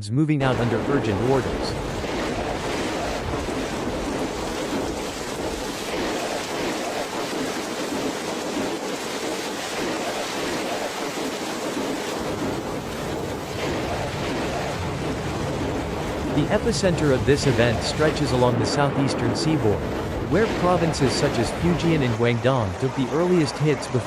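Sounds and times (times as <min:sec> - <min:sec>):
water rushing: 0:00.4 - 0:24.0.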